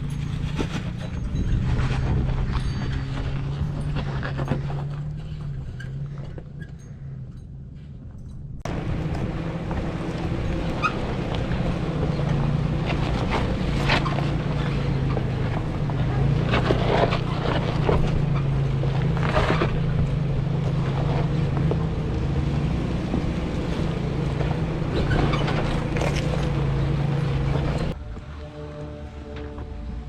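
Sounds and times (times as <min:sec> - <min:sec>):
engine running at low revs: 0:00.0 - 0:30.0
tyres crunching on rock: 0:08.7 - 0:28.0.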